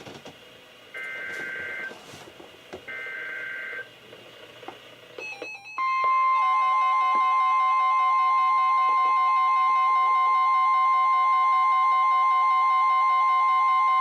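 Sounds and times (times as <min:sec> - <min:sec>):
steady warning alarm tone: 0:00.9 - 0:02.1, 0:02.9 - 0:03.9, 0:05.2 - 0:14.0.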